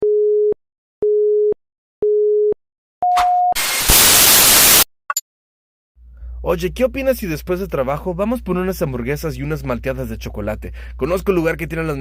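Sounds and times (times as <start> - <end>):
loud static hiss: 3.6 - 4.9.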